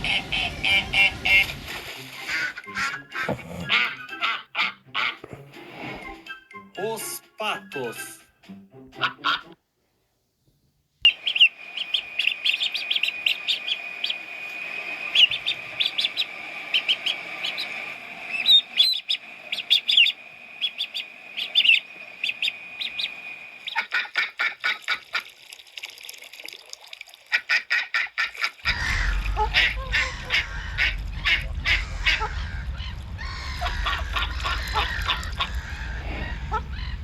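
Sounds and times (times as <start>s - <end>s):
birds chirping: 0.0s - 5.3s, 11.0s - 25.2s, 28.2s - 37.0s.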